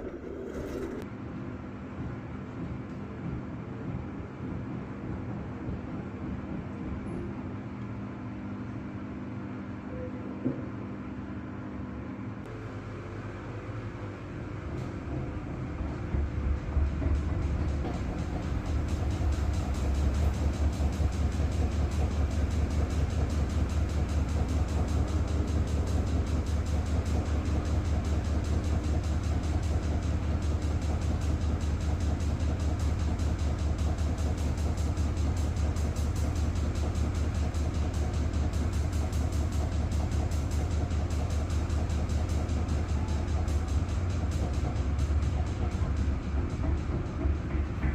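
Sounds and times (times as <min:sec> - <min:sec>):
washing machine spinning: 0:00.0 - 0:01.0, 0:12.4 - 0:47.9
rhythmic knocking: 0:15.1 - 0:47.9.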